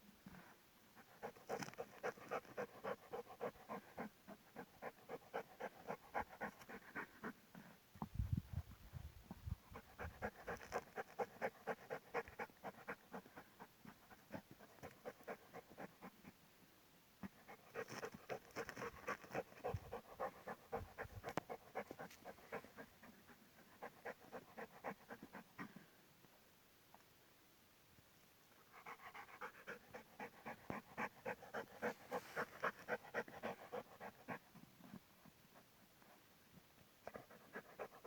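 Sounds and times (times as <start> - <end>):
dog panting fast: 1.0 - 7.7, 8.5 - 16.2, 17.2 - 25.8, 28.7 - 35.0, 37.0 - 38.0.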